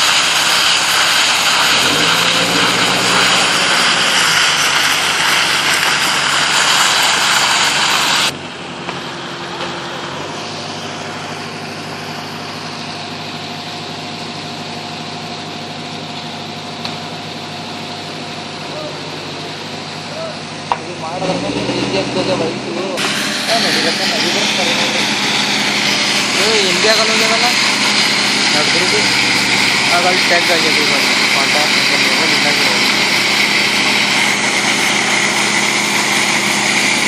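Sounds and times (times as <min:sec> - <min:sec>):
construction machinery engines: 0:00.0 - 0:37.0
loud steady rushing noise: 0:01.4 - 0:12.7, 0:20.9 - 0:37.0.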